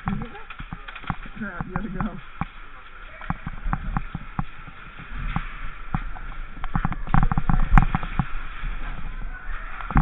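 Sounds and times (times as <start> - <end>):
sharp clicks and knocks: 0.0 - 2.6.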